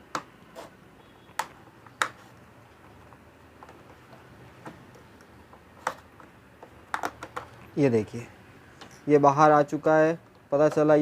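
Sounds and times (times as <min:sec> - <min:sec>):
sharp plastic clicks: 0:03.6 - 0:07.7.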